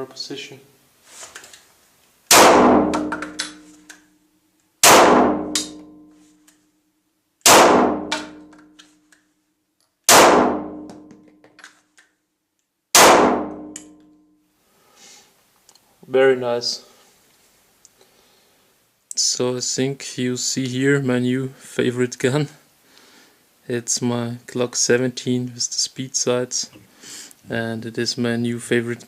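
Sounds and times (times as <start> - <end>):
pistol shots: 2.3 - 3.7, 4.8 - 5.9, 7.4 - 8.4, 10.1 - 11.1, 13.0 - 13.8.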